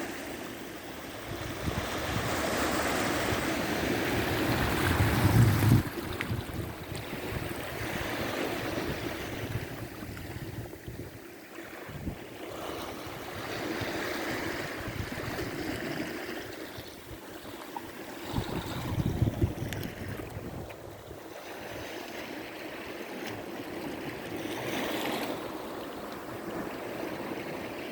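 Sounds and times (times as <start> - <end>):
sea waves washing on shore: 0.0 - 27.9
wind buffeting microphone: 1.2 - 11.2, 11.8 - 17.3, 18.2 - 21.8.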